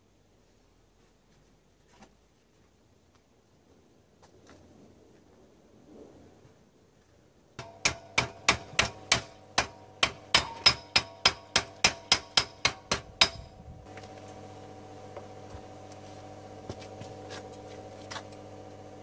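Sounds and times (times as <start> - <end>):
hammer striking metal: 7.6 - 13.5.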